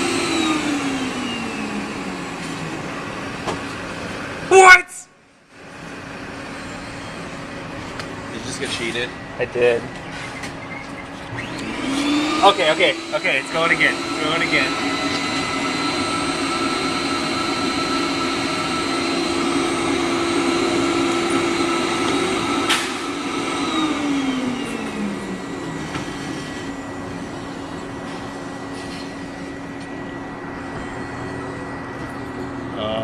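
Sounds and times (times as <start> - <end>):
machine hum: 5.4 - 33.0
suction pump humming: 11.0 - 32.9.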